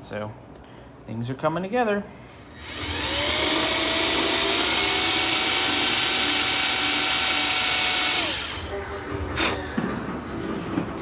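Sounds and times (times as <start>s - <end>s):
power tool motor whine: 2.5s - 8.7s.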